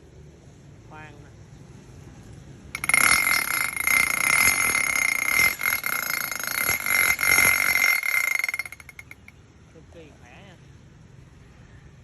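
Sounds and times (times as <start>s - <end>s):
rotary hammer motor whining: 2.8s - 9.3s.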